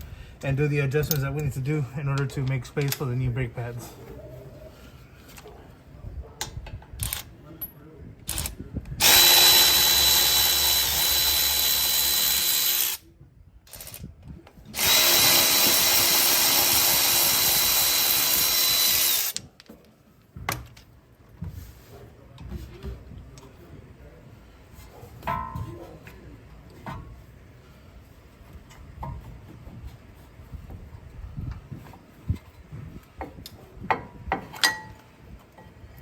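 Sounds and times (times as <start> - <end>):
power drill whining: 9.0 - 13.0, 14.8 - 19.4.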